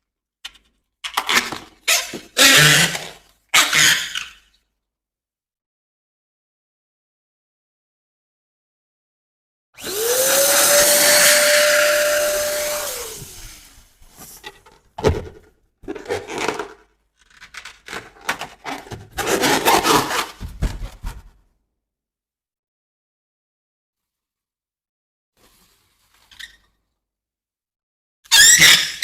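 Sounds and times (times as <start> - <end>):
electric balloon pump whining: 9.8 - 13.8
rubber balloon rubbing: 18.7 - 21.3.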